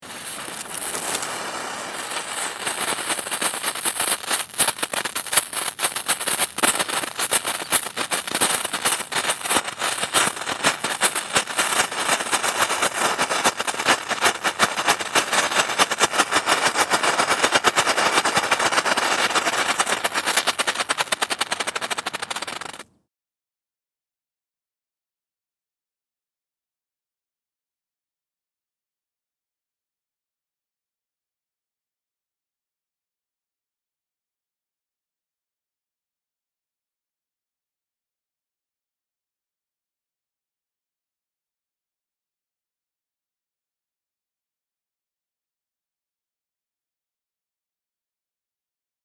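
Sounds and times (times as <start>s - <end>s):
firework crackles: 0.0s - 22.9s.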